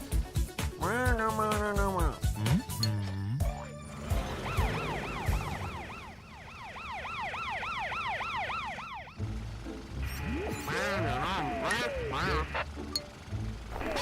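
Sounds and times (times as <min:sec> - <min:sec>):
low background music: 0:00.0 - 0:06.1, 0:08.6 - 0:13.8
cartoon ambulance siren wailing: 0:03.4 - 0:09.3, 0:10.0 - 0:12.7.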